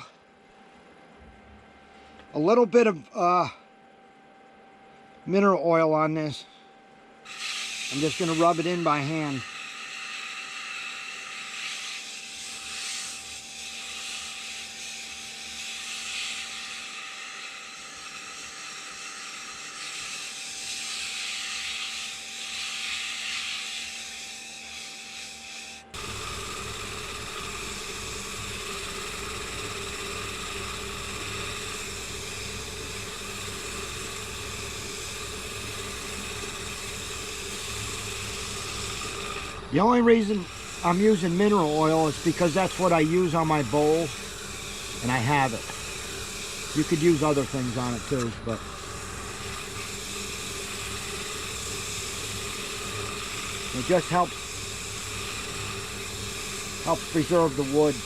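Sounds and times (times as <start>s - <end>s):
steady hiss: 26.0s - 58.0s
hand rubbing wood: 27.2s - 58.0s.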